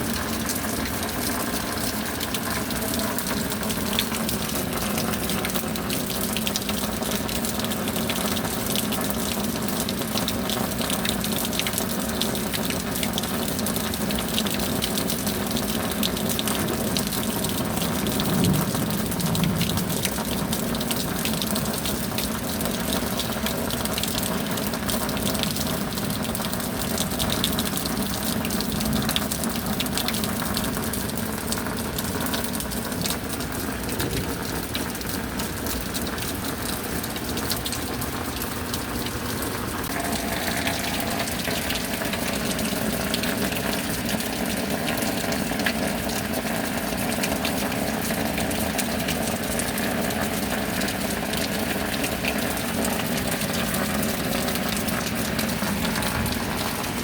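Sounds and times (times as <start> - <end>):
rain falling steadily: 0.0 - 57.0.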